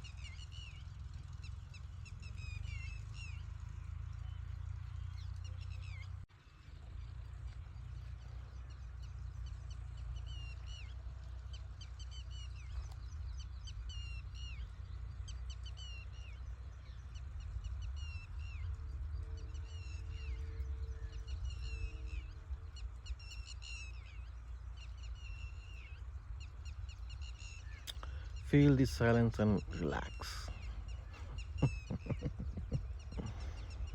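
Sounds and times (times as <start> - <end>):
bird chirping: 0.0 - 33.9
steady low rumble: 16.1 - 33.9.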